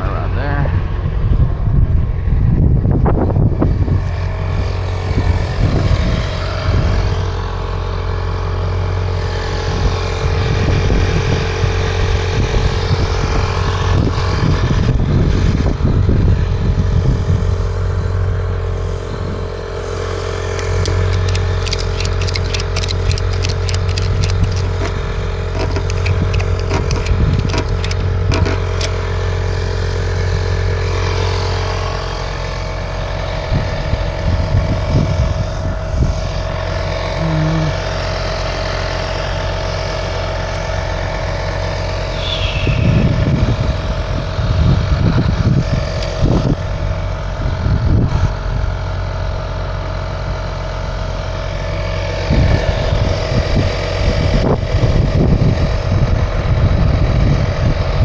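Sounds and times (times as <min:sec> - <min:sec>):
truck engine running: 0:02.3 - 0:09.8, 0:12.8 - 0:29.3
rapid rattling: 0:02.8 - 0:07.4.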